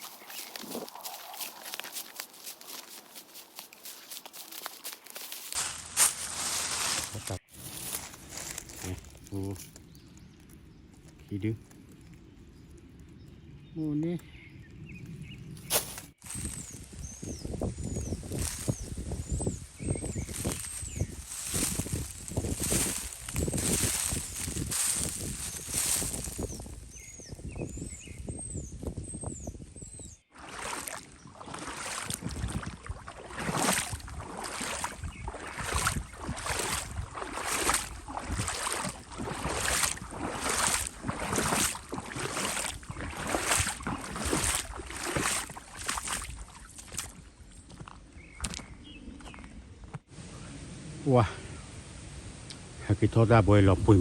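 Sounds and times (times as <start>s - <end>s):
footsteps crunching dry leaves: 0.0s - 9.8s, 15.6s - 27.2s, 30.4s - 47.9s
small birds chirping: 0.0s - 50.0s.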